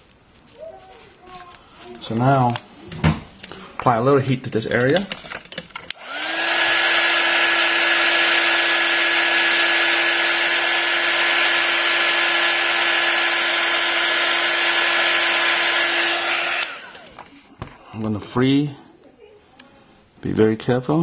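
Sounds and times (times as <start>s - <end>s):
heat gun blowing air: 5.9s - 17.3s
heat gun motor whine: 5.9s - 17.3s.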